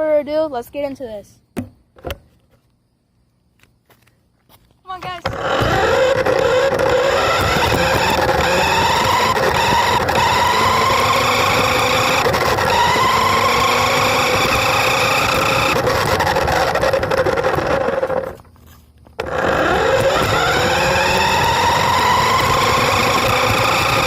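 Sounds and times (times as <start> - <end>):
remote-control car motor whining: 5.2 - 18.4, 19.2 - 24.0.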